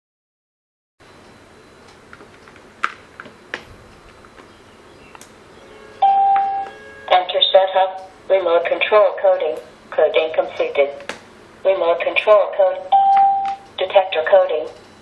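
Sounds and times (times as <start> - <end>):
alarm panel electronic beep: 5.8 - 7.3, 12.7 - 14.4.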